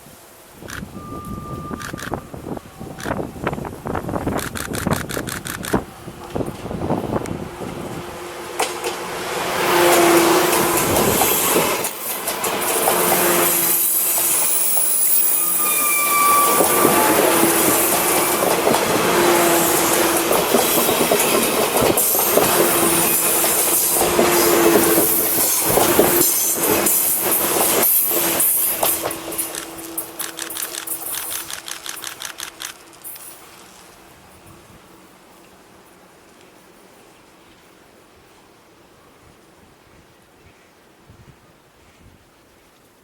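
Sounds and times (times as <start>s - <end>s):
train wheels rumbling on rails: 0.6s - 36.0s
wheel squeals: 13.8s - 17.8s.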